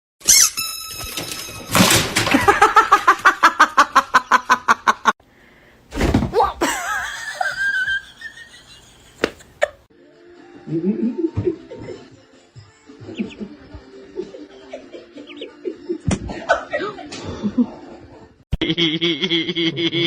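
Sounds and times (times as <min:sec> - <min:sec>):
wavering squeak: 0:00.2 - 0:01.8.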